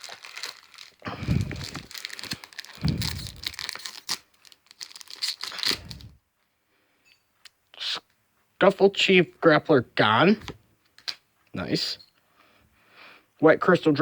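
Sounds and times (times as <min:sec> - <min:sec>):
foil wrapper tearing and crinkling: 0:00.0 - 0:06.2.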